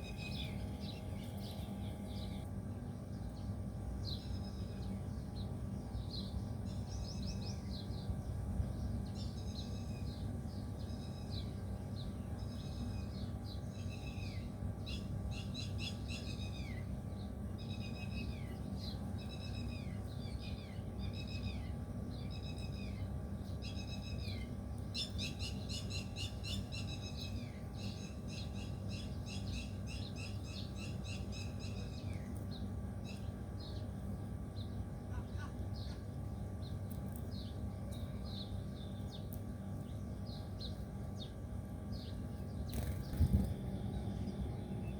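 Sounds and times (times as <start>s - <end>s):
steady low rumble: 31.4s - 44.9s.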